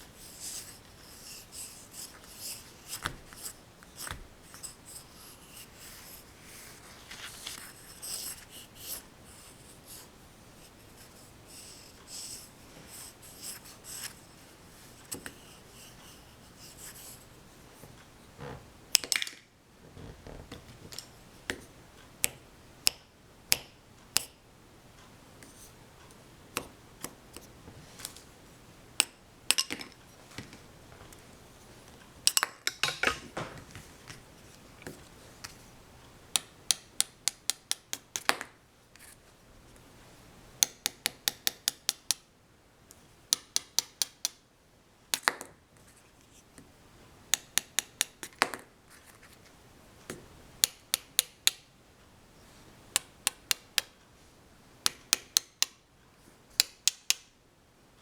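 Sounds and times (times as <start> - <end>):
handling noise: 32.8 - 34.3.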